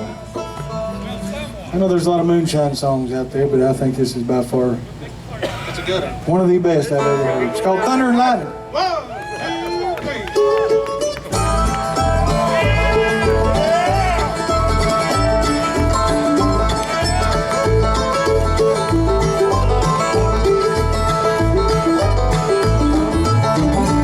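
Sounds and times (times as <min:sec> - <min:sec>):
banjo: 0:00.0 - 0:01.8, 0:07.0 - 0:08.7, 0:10.4 - 0:24.0
bluegrass band playing: 0:00.0 - 0:03.1, 0:06.0 - 0:24.0.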